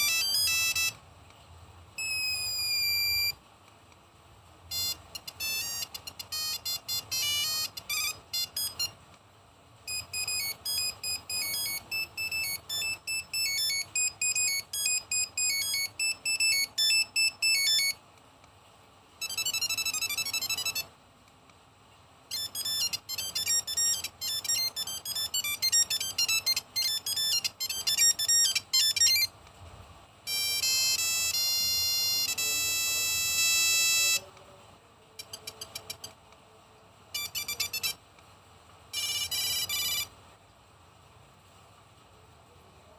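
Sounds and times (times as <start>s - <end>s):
monophonic phone ringtones: 0.0s - 1.0s, 2.0s - 3.4s, 4.7s - 9.0s, 9.9s - 18.0s, 19.2s - 20.9s, 22.3s - 29.3s, 30.3s - 34.2s, 35.2s - 36.2s, 37.2s - 38.0s, 38.9s - 40.1s.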